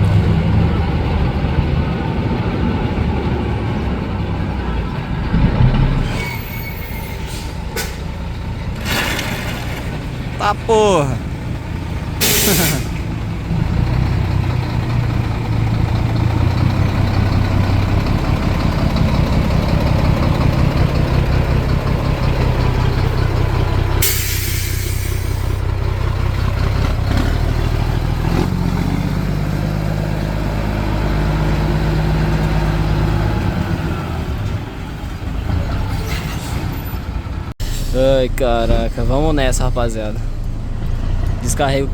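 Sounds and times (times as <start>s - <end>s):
diesel truck engine idling: 10.2s - 28.3s
air brake hiss: 12.2s - 13.0s, 24.0s - 25.4s, 37.6s - 38.0s.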